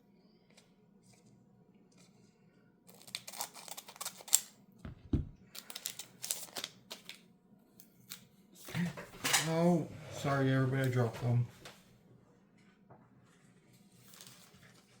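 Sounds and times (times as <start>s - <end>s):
foil wrapper crinkling: 2.9s - 4.6s, 5.5s - 7.2s.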